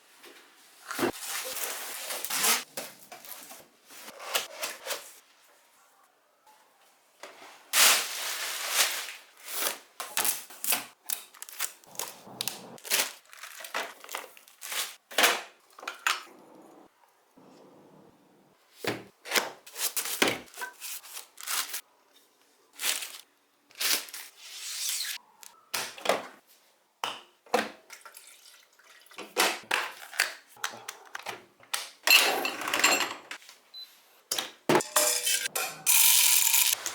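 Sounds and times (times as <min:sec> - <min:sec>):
cardboard and plastic rustling: 0:11.3 - 0:15.4.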